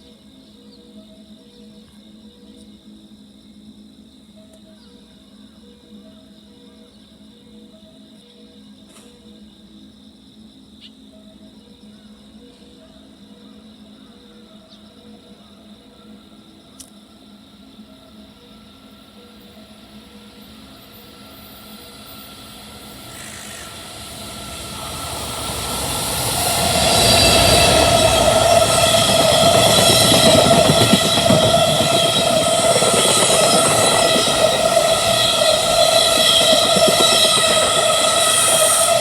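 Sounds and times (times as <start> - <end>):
freight train passing: 18.8 - 39.0
high whine: 20.5 - 39.0.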